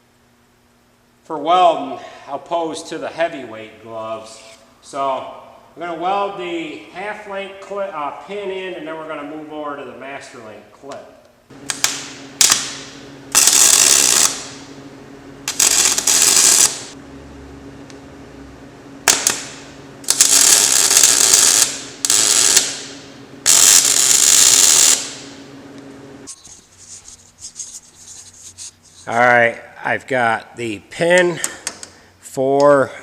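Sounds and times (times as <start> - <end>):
welder humming: 11.5 - 27.2
crackling welding arc: 11.6 - 14.7, 15.4 - 17.0, 19.0 - 25.4.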